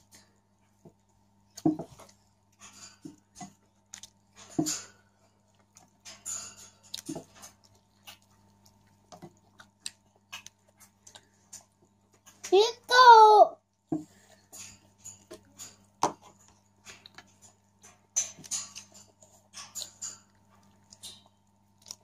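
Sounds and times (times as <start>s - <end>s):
faint electrical hum: 0.0s - 22.0s
person chewing and mouth noises: 6.8s - 12.3s.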